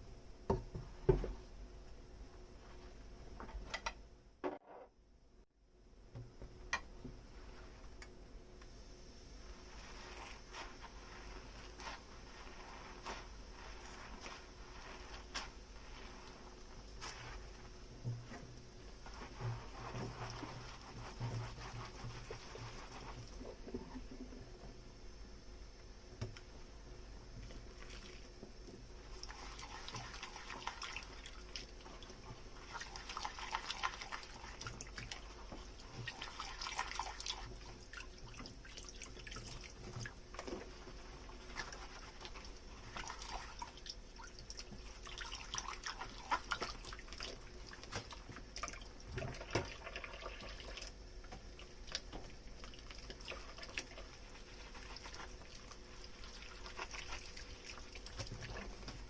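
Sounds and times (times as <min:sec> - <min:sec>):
sponge scrubbing dishes: 0:09.4 - 0:24.8, 0:27.5 - 0:59.0.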